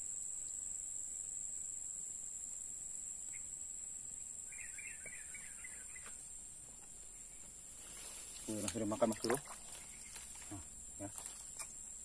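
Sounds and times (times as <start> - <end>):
high-pitched insect drone: 0.0 - 8.4.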